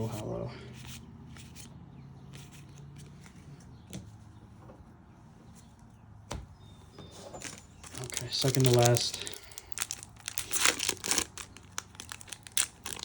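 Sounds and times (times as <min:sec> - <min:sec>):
trading cards and wrappers rustling: 0:07.2 - 0:13.0.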